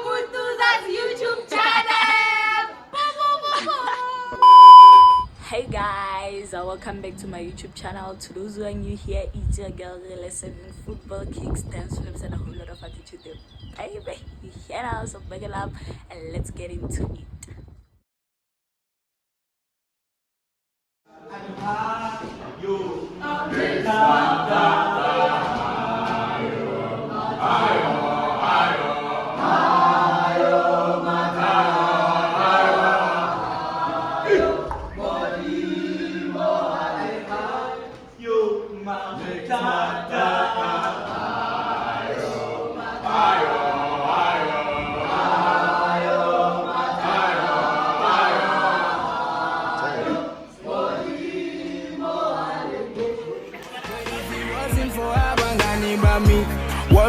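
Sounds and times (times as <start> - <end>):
choir singing unaccompanied: 0.0 - 5.2, 21.2 - 57.0.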